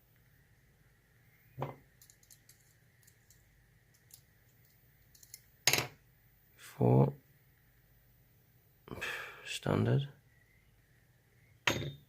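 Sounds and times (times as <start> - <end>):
light clicks of small pins: 2.0 - 5.5.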